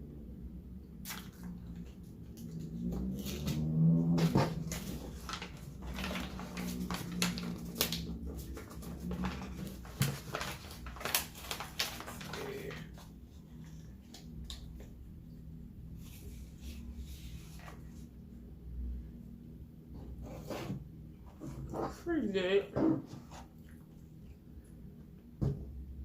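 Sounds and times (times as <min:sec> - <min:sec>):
person chewing and smacking food: 0:23.5 - 0:25.2.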